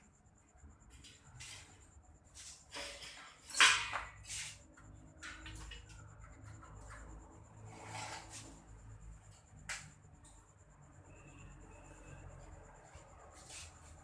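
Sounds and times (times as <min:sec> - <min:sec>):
soft scraping and rubbing: 0:06.5 - 0:08.8, 0:12.4 - 0:14.0.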